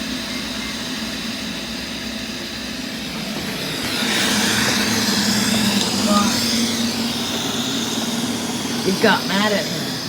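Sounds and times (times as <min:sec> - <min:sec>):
robot vacuum cleaners on carpet: 0:00.0 - 0:10.0.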